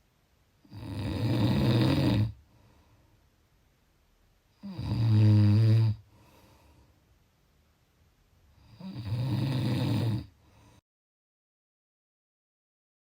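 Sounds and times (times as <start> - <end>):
person snoring: 0.7 - 2.4, 4.6 - 6.0, 8.6 - 10.4.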